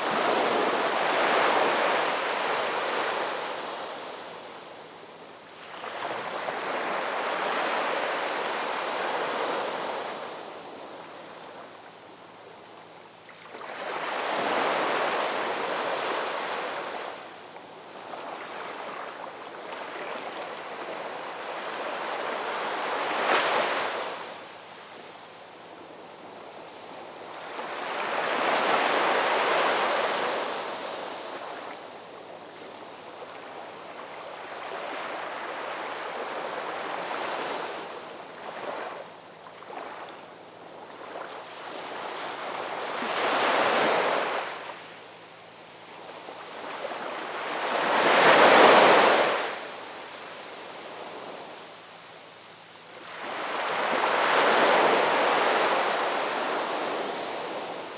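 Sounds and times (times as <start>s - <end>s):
sea waves breaking on beach: 46.2s - 49.8s, 53.0s - 57.9s.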